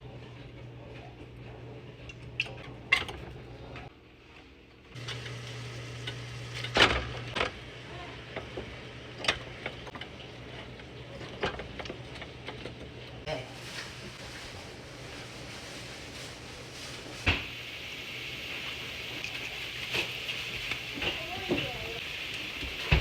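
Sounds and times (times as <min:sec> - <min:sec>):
cookware and utensils clinking: 0:19.1 - 0:23.0.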